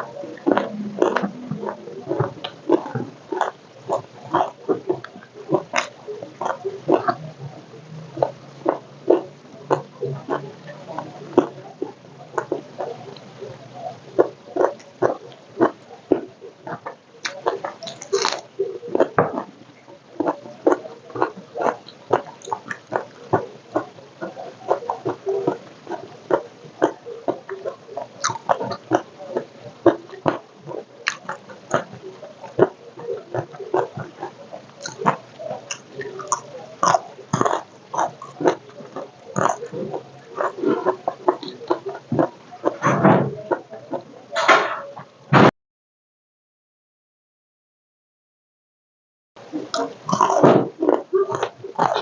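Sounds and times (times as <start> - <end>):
crackly crunch: 0.0 - 45.1, 49.5 - 52.0
wet chewing and lip-smacking: 14.2 - 19.6, 20.2 - 42.8.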